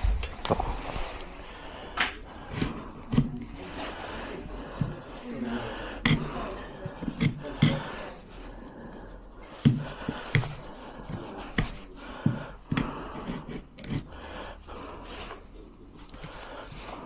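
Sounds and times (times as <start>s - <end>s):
hand tools clicking and knocking: 6.0s - 8.0s, 9.5s - 14.1s.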